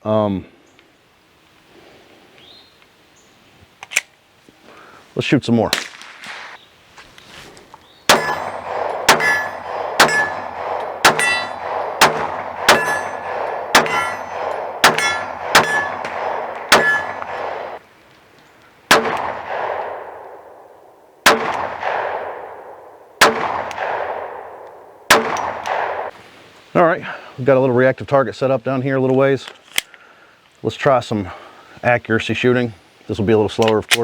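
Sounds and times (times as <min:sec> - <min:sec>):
metallic ring: 0:08.1 - 0:16.1, 0:16.7 - 0:17.3
pistol shots: 0:08.1 - 0:17.8, 0:18.9 - 0:20.6, 0:21.2 - 0:26.1.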